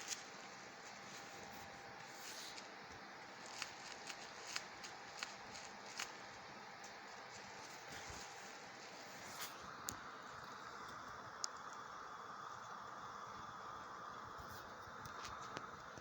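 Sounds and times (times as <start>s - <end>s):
bubble wrap crinkling and clicking: 0.0s - 9.0s.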